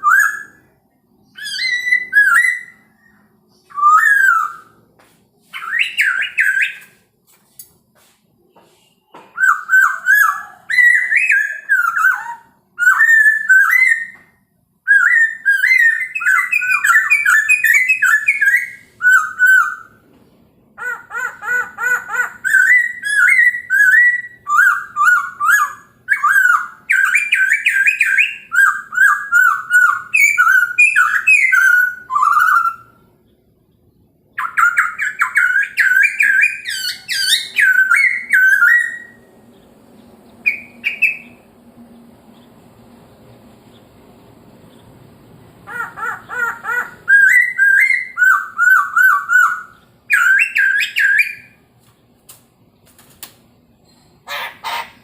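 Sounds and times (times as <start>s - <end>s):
songbird whistled singing: 0.0s - 4.8s, 5.5s - 7.0s, 8.7s - 20.0s, 22.1s - 33.1s, 34.3s - 41.5s, 45.7s - 51.6s.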